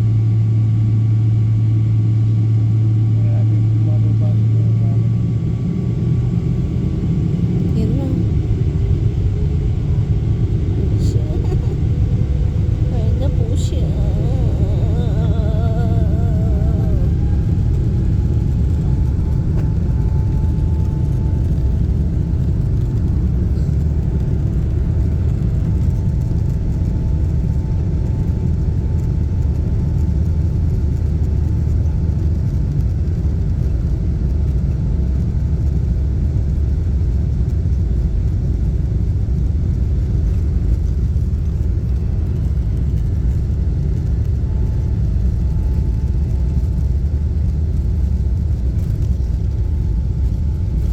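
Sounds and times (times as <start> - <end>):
faint steady whine: 0.0 - 50.9
jet engines and rushing air: 5.2 - 29.3.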